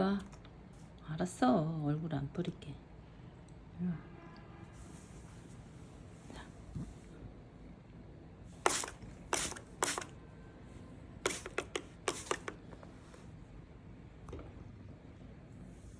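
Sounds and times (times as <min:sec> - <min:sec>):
spray bottle spritzing: 0:08.6 - 0:10.2, 0:11.2 - 0:12.5.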